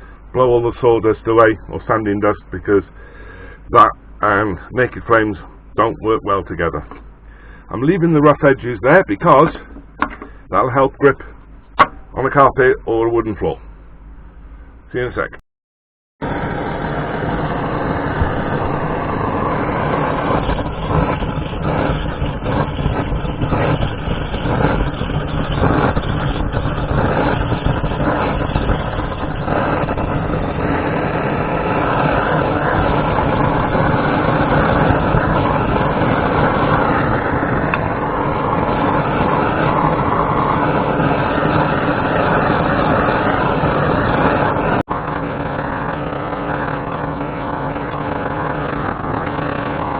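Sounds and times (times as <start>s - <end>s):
blowtorch flame roaring: 16.2s - 49.9s.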